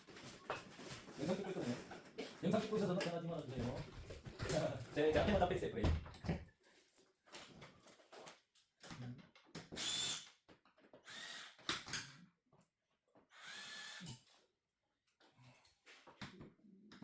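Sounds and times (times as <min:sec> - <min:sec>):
power drill whine: 0:09.8 - 0:10.3, 0:11.0 - 0:11.7, 0:13.3 - 0:14.4.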